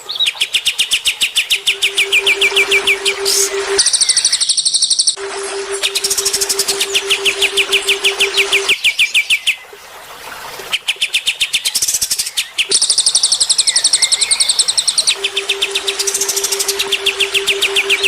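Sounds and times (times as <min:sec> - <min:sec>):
low pulsing tone: 0:01.6 - 0:04.2, 0:05.2 - 0:08.7, 0:15.2 - 0:18.0
high repeated bird chirps: 0:12.7 - 0:18.0.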